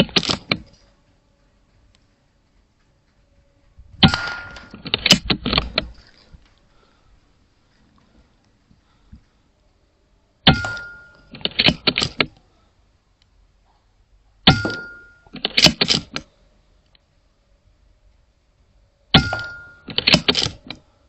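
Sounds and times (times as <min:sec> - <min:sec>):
air rifle shots: 0:04.0 - 0:05.9.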